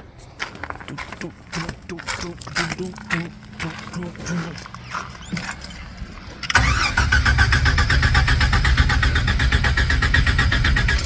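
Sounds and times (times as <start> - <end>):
engine cranking without starting: 4.6 - 11.0.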